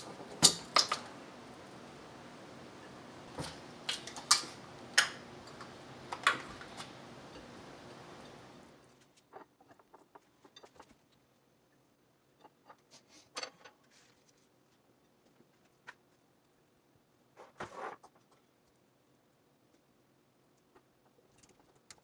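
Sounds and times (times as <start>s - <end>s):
kitchen utensils and dishes clicking: 0.0s - 2.0s, 2.6s - 8.6s
steady background hiss: 0.0s - 9.0s.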